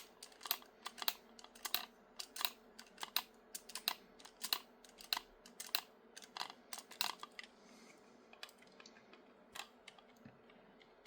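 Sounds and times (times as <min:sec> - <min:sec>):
plastic parts clicking: 0:00.0 - 0:07.5.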